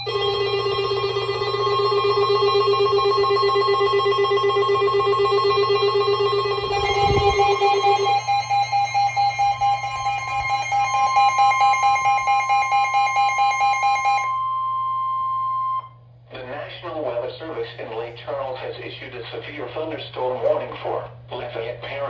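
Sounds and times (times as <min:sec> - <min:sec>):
electronic alarm tones: 0:00.0 - 0:16.0
low steady hum: 0:00.0 - 0:22.0.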